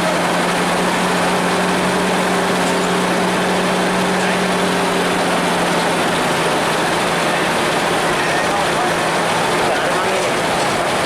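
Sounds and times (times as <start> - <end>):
bus engine running: 0.0 - 11.0.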